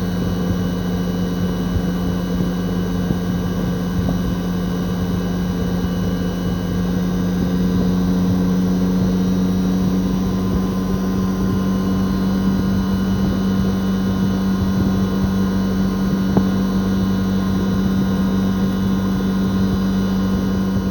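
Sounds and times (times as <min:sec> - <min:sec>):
compressor humming: 0:00.0 - 0:20.9.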